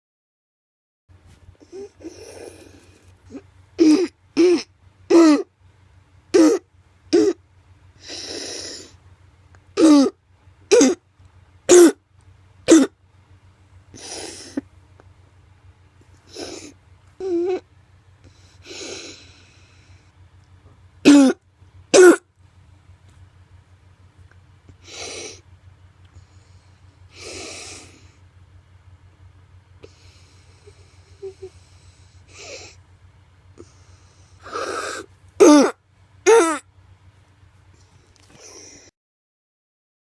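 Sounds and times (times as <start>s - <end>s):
noisy breaths: 1.2s - 3.5s, 7.9s - 9.2s, 13.1s - 15.2s, 18.1s - 20.3s, 24.7s - 28.4s, 29.7s - 35.3s, 37.6s - 38.9s
child barking cough: 6.3s - 7.4s, 9.8s - 11.0s, 11.7s - 12.0s, 12.7s - 12.9s, 21.0s - 21.4s, 22.0s - 22.2s, 35.4s - 36.6s.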